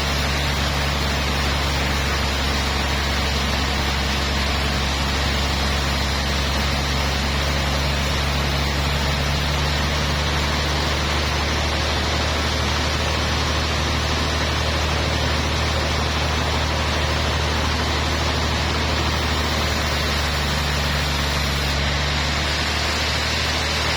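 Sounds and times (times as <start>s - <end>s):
sawmill machinery engine hum: 0.0s - 23.9s
noisy hiss: 19.0s - 23.9s.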